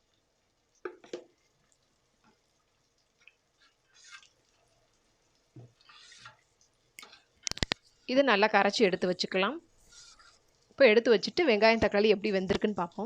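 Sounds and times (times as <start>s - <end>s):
spoon swishing liquid: 3.2s - 4.8s, 5.6s - 7.3s, 9.8s - 10.7s.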